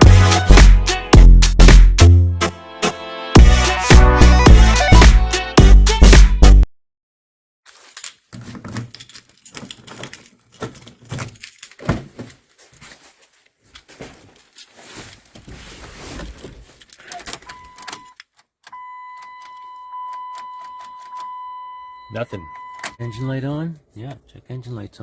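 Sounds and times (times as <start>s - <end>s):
keys jangling: 7.7s - 21.4s
handling clicks and rustles: 7.7s - 24.0s
electronic warning tone: 18.8s - 23.4s.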